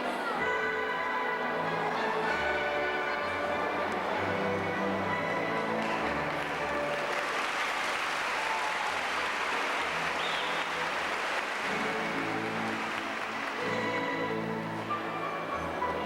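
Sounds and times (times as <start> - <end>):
quiet music: 0.0 - 7.6, 8.9 - 16.0
audience applauding: 3.9 - 14.4.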